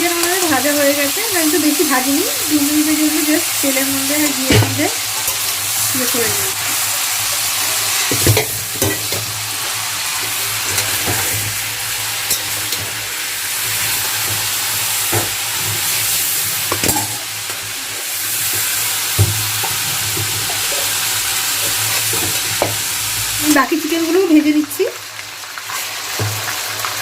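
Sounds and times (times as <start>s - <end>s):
chicken sizzling in hot oil: 0.0s - 27.0s.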